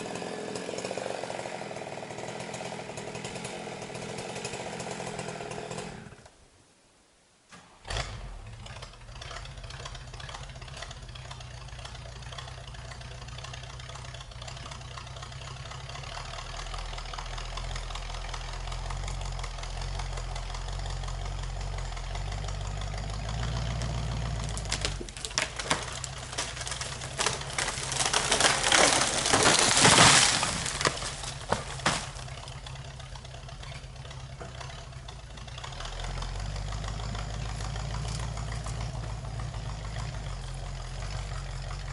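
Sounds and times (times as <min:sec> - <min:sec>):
engine running steadily: 0:07.8 - 0:41.9
cracking crashing and knocking: 0:22.2 - 0:41.6.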